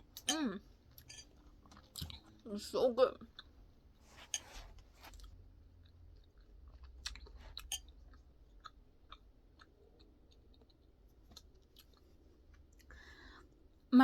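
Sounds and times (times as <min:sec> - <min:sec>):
person chewing food: 0:00.0 - 0:02.5, 0:03.2 - 0:13.8.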